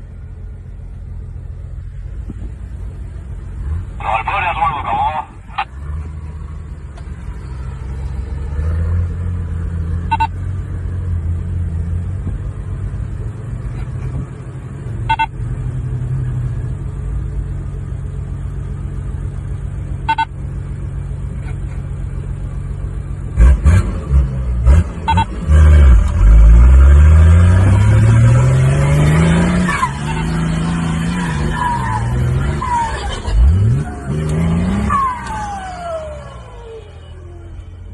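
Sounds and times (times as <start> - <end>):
turbocharged engine revving: 3.6 - 16.6, 23.2 - 37.1.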